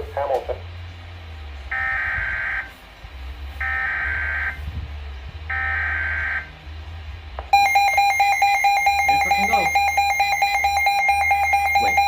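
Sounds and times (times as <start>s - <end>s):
steady low hum: 0.0s - 12.0s
buzzy digital data tones: 7.6s - 12.0s.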